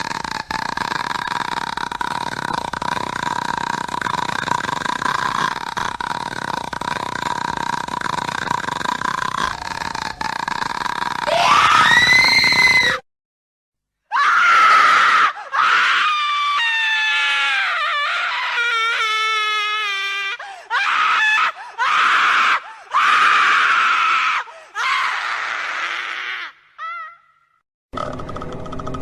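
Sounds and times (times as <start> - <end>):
person screaming in terror: 11.3 - 13.0, 14.1 - 27.5.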